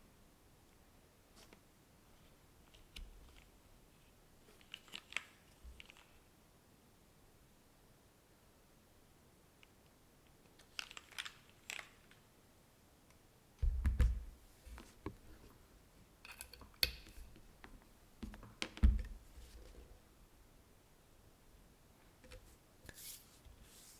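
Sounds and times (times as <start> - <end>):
deep keyboard thuds: 13.6 - 14.4, 18.2 - 19.4.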